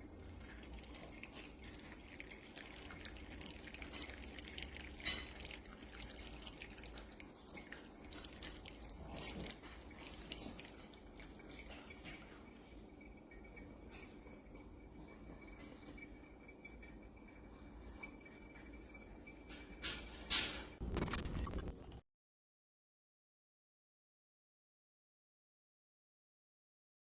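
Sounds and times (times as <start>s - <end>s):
coffee dripping into a mug: 0.0s - 19.4s.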